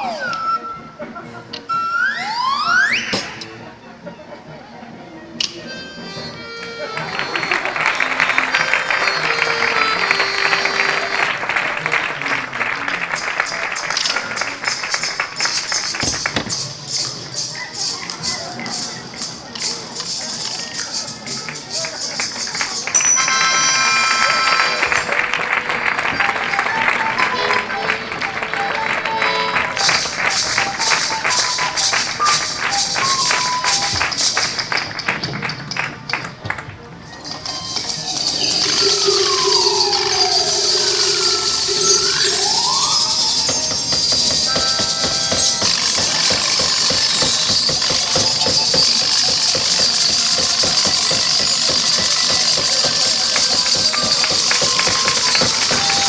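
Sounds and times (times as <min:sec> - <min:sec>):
faint music: 0:00.0 - 0:56.0
audience clapping: 0:07.0 - 0:18.7, 0:21.0 - 0:56.0
rattling hiss: 0:13.0 - 0:23.2, 0:29.8 - 0:35.9, 0:37.1 - 0:56.0.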